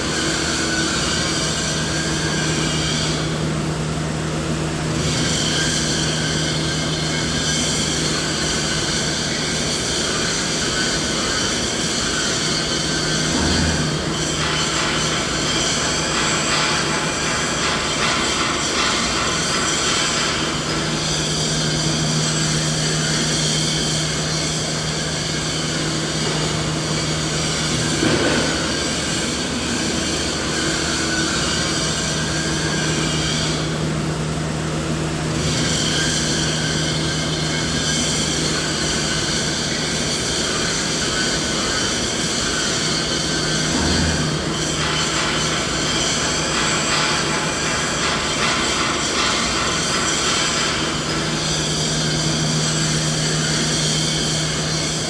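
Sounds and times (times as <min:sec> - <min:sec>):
steady low machine hum: 0:18.8 - 0:35.6.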